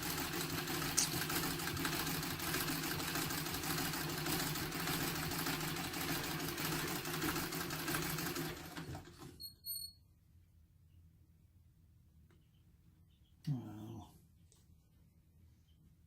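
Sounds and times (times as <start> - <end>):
treadle sewing machine clattering: 0.0 - 9.4.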